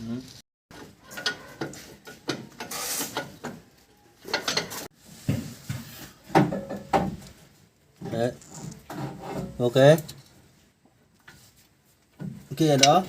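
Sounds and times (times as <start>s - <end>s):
tools and metal parts clattering: 0.7s - 4.9s, 12.2s - 13.0s.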